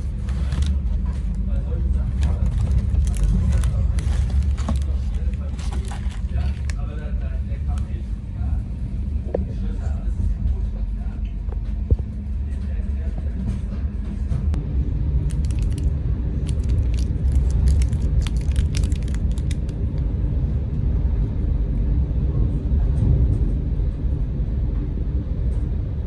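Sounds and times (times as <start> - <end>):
train rumble inside carriage: 0.0 - 26.0.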